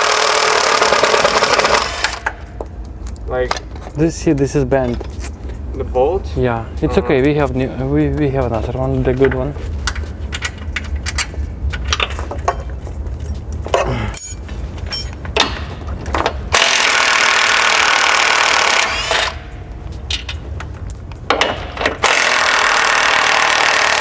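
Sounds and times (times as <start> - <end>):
power tool running: 0.0 - 2.4, 16.6 - 19.4
clicks of hand tools and metal parts: 20.0 - 22.1.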